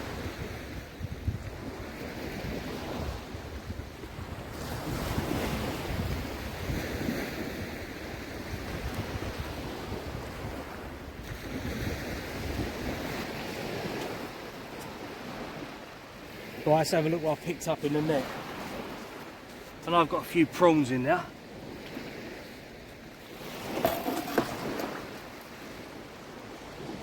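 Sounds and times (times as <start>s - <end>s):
wind buffeting microphone: 0.0s - 15.7s
surf washing on sandy beach: 0.0s - 27.0s.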